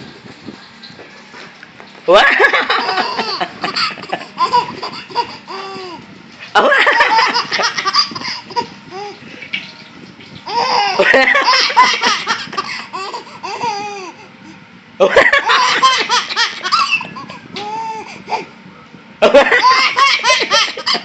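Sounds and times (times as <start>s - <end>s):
baby laughing: 2.1s - 6.0s, 6.6s - 9.2s, 10.5s - 14.2s, 15.0s - 18.5s, 19.2s - 21.0s.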